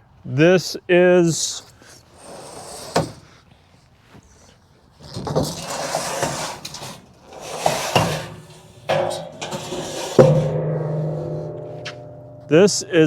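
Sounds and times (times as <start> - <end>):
metal scraping and shuffling: 2.1 - 3.4, 5.0 - 13.0
metal clanks: 5.0 - 13.0.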